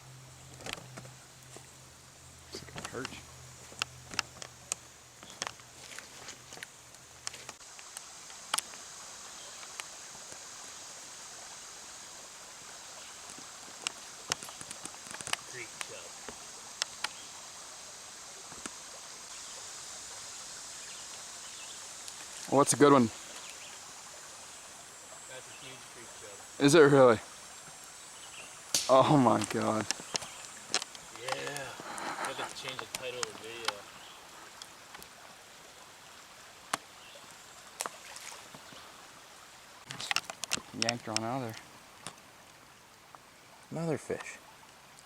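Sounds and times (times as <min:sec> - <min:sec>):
mountain stream running: 0:00.0 - 0:45.0
faint clicks: 0:13.2 - 0:17.2, 0:28.7 - 0:35.1, 0:39.9 - 0:42.2.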